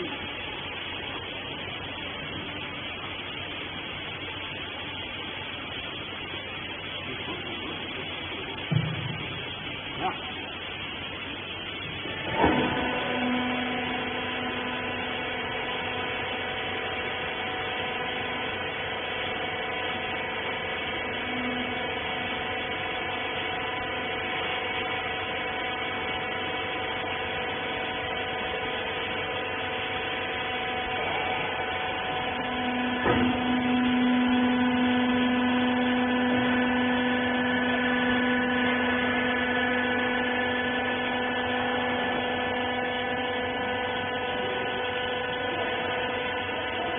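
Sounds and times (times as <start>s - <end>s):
baler machine humming: 0.0s - 46.9s
machine clunk: 33.0s - 33.4s.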